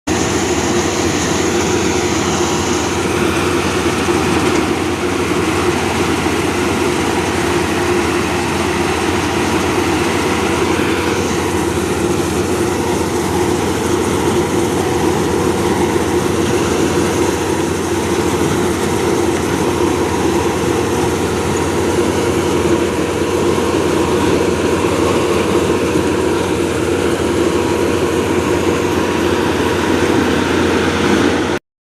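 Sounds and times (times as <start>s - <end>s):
harvester engine running: 0.1s - 31.6s.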